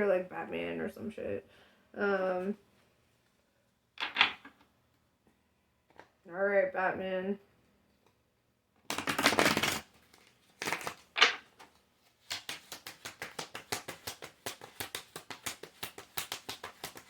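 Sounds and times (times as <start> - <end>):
cards rustling: 8.9 - 17.0
cards swishing: 11.7 - 17.0.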